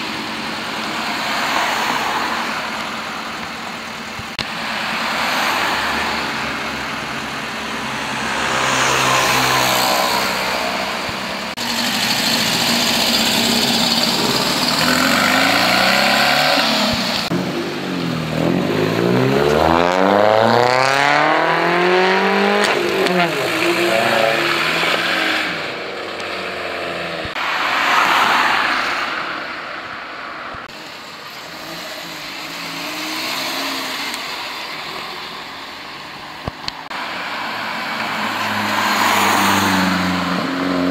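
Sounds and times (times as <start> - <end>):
car engines accelerating: 0.0 - 40.9
engine revving: 4.3 - 27.5.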